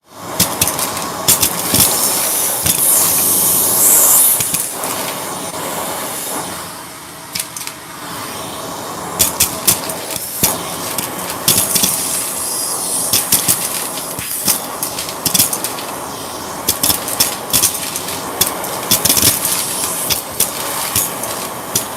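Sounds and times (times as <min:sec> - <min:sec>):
vacuum cleaner running: 0:00.0 - 0:21.9
sharp clicks and rattles: 0:00.4 - 0:03.4, 0:04.4 - 0:05.2, 0:07.3 - 0:07.8, 0:09.2 - 0:12.4, 0:13.0 - 0:16.0, 0:16.6 - 0:21.9.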